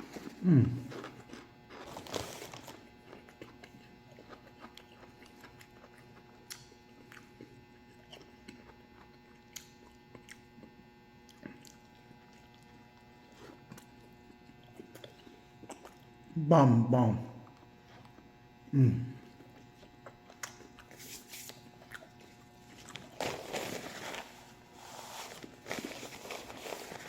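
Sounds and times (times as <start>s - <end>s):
person chewing food: 0.0s - 16.3s, 17.4s - 18.4s, 19.2s - 27.0s
faint electrical hum: 0.0s - 27.0s
crunch: 0.1s - 10.7s, 19.5s - 27.0s.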